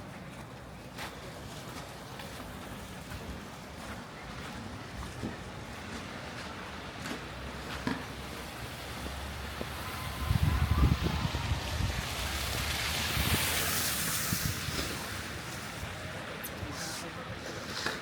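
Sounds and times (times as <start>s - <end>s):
tyres hissing on snowy street: 0.0s - 18.0s
wind buffeting microphone: 9.5s - 16.1s.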